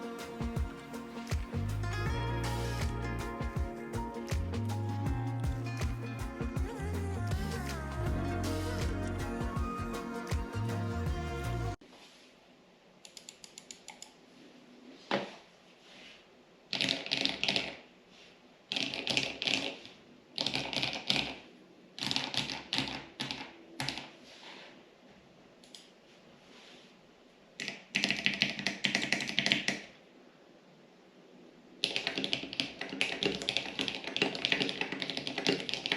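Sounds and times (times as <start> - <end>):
mechanical keyboard typing: 16.7 - 17.8, 18.7 - 19.8, 20.4 - 21.4, 22.0 - 24.1, 27.6 - 29.9, 31.8 - 35.9.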